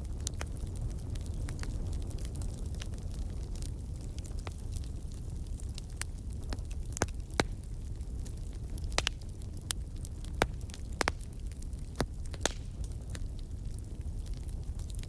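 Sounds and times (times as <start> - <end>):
fireplace fire crackling: 0.0 - 15.0.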